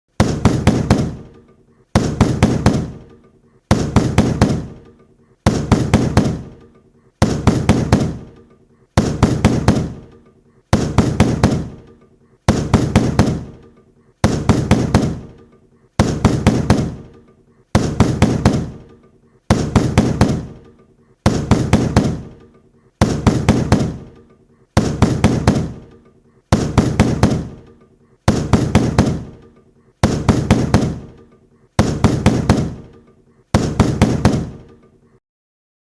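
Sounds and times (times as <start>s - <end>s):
hard knocks on heavy door: 0.2s - 1.3s, 2.0s - 3.1s, 3.7s - 4.8s, 5.4s - 6.6s, 7.2s - 8.4s, 9.0s - 10.1s, 10.7s - 11.8s, 12.5s - 13.6s, 14.2s - 15.4s, 16.0s - 17.1s, 17.7s - 18.9s, 19.5s - 20.6s, 21.2s - 22.4s, 23.0s - 24.1s, 24.8s - 25.9s, 26.5s - 27.6s, 28.3s - 29.4s, 30.0s - 31.2s, 31.8s - 32.9s, 33.5s - 34.7s.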